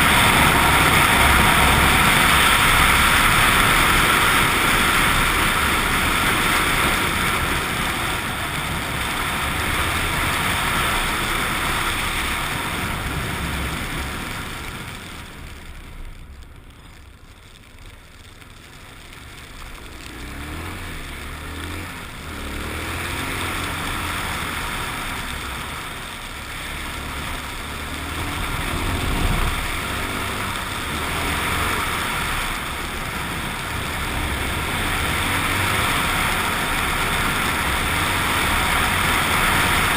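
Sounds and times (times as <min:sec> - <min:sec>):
motorcycle engine running: 0:00.0 - 0:16.4, 0:17.0 - 0:39.9
wind rush: 0:28.0 - 0:37.0.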